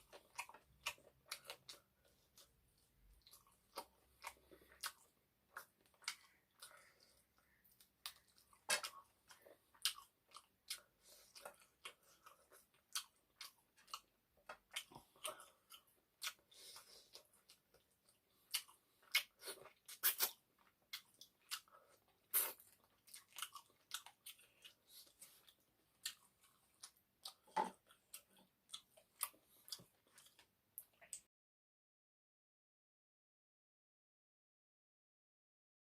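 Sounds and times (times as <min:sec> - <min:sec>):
person chewing food: 0:00.0 - 0:31.3.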